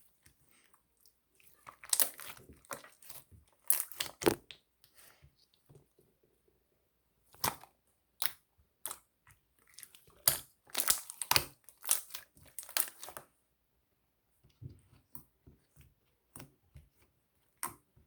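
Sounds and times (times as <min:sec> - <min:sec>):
slime squished by hand: 0:01.4 - 0:04.6, 0:09.7 - 0:13.2.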